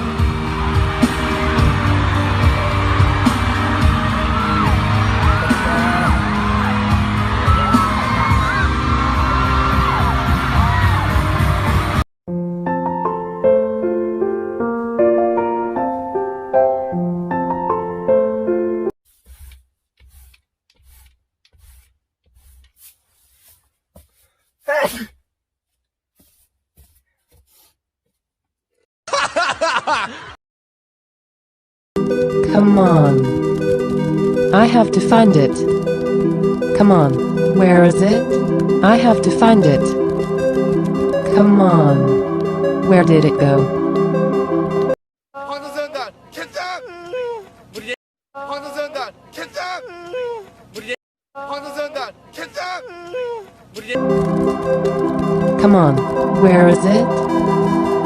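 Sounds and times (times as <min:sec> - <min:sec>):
pop music with steady beat: 0:00.0 - 0:12.0, 0:32.0 - 0:45.0, 0:54.0 - 0:58.0.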